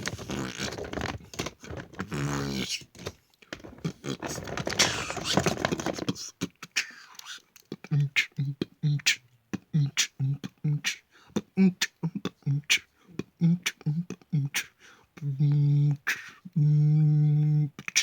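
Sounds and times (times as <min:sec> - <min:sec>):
person beatboxing: 0:06.2 - 0:18.0.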